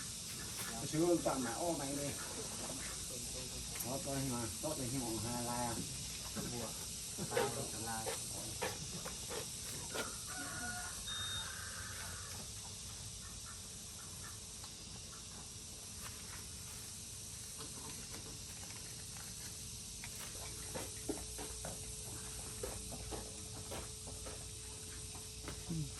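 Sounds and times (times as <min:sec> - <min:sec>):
outdoor background noise: 0:00.0 - 0:25.9
rooster crowing: 0:09.9 - 0:12.5.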